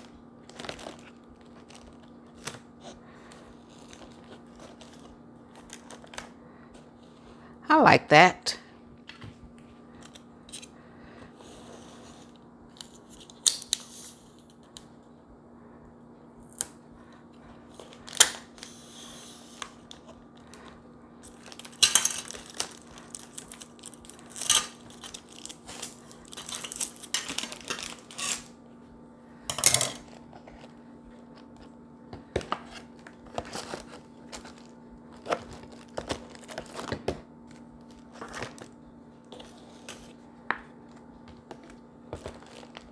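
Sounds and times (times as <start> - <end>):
packaging crinkling and rustling: 0.0 - 7.4, 17.6 - 28.6, 29.6 - 42.9
faint steady hum: 0.0 - 42.9.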